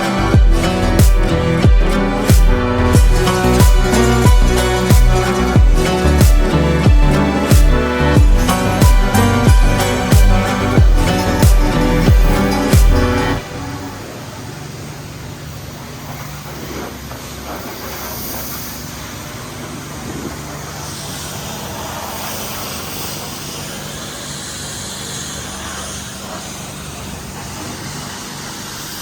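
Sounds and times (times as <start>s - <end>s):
low hum: 0.0s - 17.9s
pressure washer spraying water: 0.0s - 29.0s.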